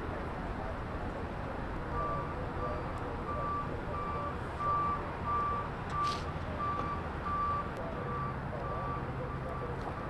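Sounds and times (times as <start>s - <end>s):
reversing alarm beeping: 2.0s - 10.0s
short hiss: 6.0s - 6.3s.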